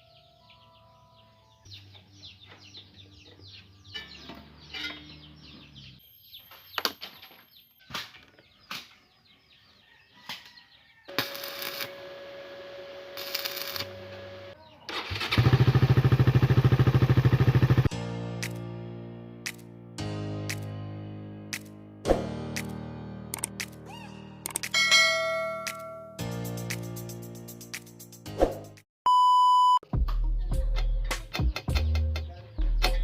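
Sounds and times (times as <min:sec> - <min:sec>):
birds chirping: 0:00.0 - 0:11.1
motorcycle engine running: 0:15.2 - 0:17.9
sharp clicks: 0:23.3 - 0:23.8, 0:24.5 - 0:24.7.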